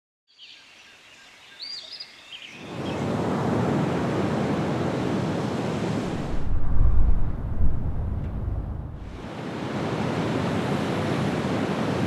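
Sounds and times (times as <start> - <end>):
loud steady rushing noise: 5.9 - 9.5
deep rumble: 6.1 - 9.3.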